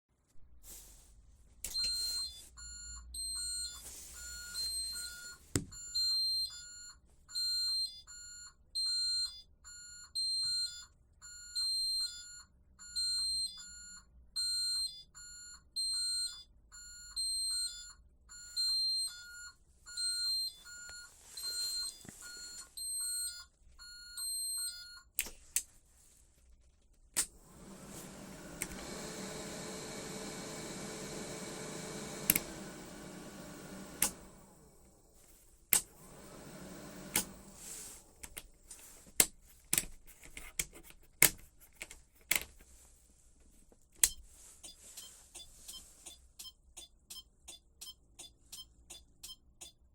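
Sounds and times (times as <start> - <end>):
fan-like whirr: 27.2 - 38.4.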